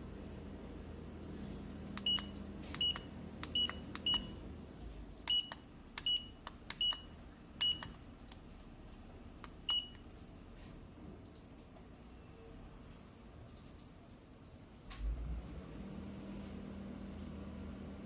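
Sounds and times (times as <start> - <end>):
button clicks: 2.0 - 4.4, 5.2 - 8.0
short high beeps: 2.0 - 4.4, 5.3 - 8.0, 9.7 - 10.1.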